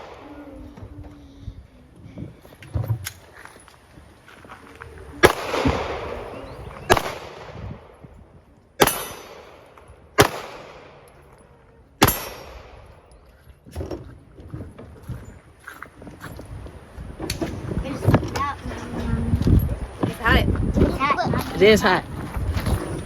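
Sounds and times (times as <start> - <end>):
pistol gunshots with echo: 5.2 - 11.4, 12.0 - 13.2.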